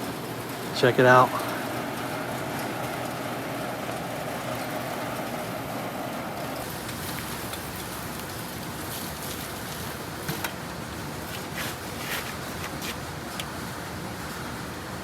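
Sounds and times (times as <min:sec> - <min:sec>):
pressure washer spraying: 0:01.4 - 0:07.4.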